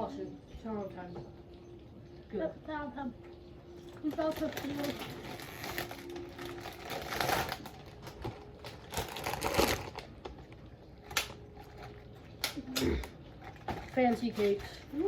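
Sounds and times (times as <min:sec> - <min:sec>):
snack packaging crinkling: 0:03.8 - 0:15.0.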